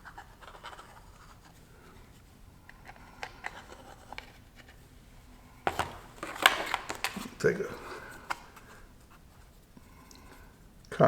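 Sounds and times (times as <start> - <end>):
small parts ticks and scrapes: 0.0 - 1.6, 2.6 - 4.8.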